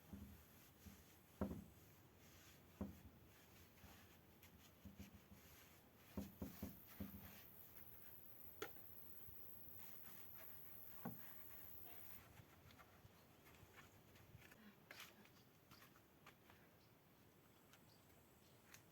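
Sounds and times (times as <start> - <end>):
soft knocks and taps: 1.4 - 1.8, 2.7 - 3.1, 6.1 - 7.5, 10.8 - 12.0.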